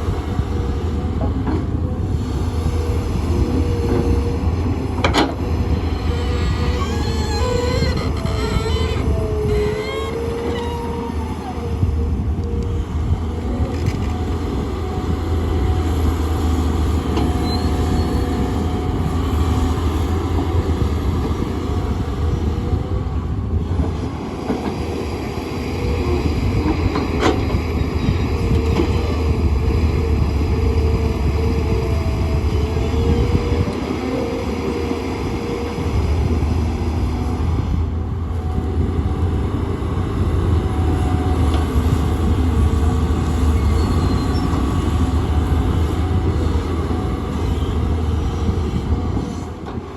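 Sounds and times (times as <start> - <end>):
excavator diesel engine running: 0.0 - 49.9.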